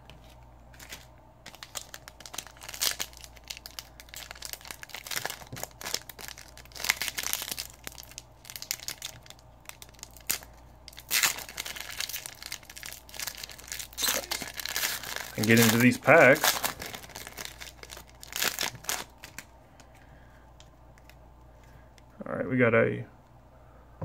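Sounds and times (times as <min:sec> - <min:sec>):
foil wrapper crinkling and tearing: 0:00.8 - 0:20.0.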